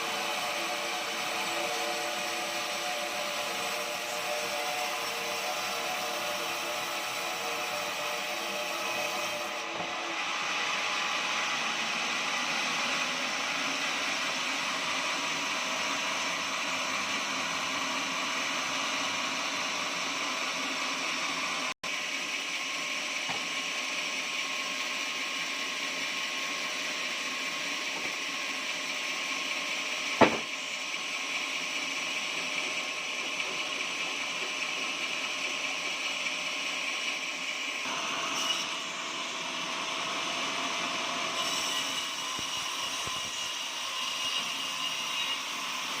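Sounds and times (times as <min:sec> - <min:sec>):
sawmill sawing a log: 0:00.0 - 0:46.0
sharp knock: 0:30.2 - 0:30.5.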